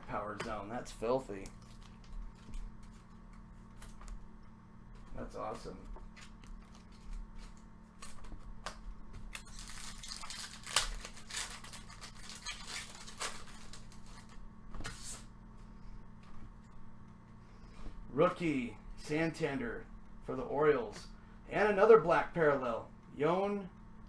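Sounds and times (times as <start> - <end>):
foil wrapper tearing and crinkling: 9.3 - 14.4.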